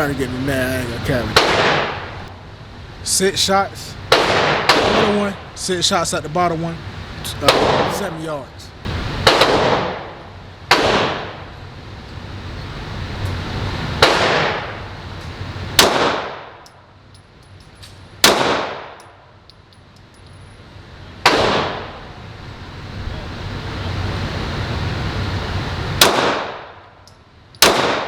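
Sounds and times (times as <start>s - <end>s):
pistol shots echoing indoors: 4.1s - 5.1s, 9.2s - 10.1s, 10.7s - 11.3s, 14.0s - 14.7s, 18.2s - 19.0s, 27.6s - 28.0s.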